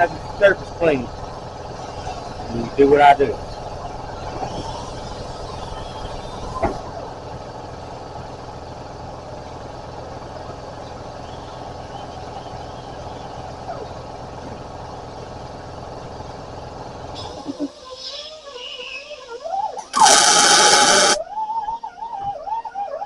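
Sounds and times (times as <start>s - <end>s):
electric welding arc crackling: 19.8s - 21.2s.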